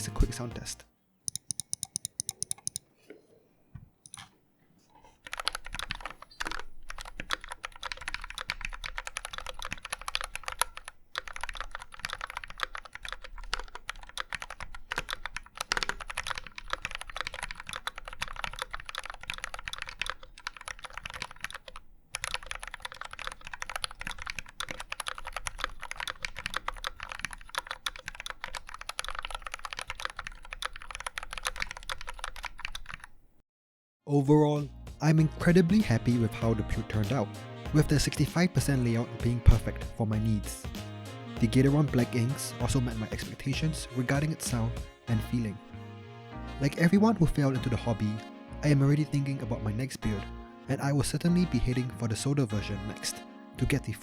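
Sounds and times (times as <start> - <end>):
mechanical keyboard typing: 1.3 - 2.8, 5.2 - 33.2.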